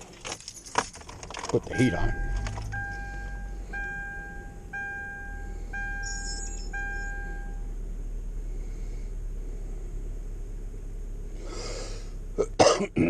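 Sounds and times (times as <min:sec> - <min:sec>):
steady low hum: 0:00.0 - 0:13.0
car warning chime: 0:01.6 - 0:07.7.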